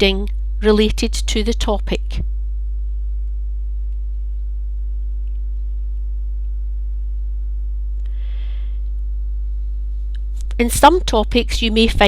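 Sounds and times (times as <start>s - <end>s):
electrical mains hum: 0.0s - 12.0s.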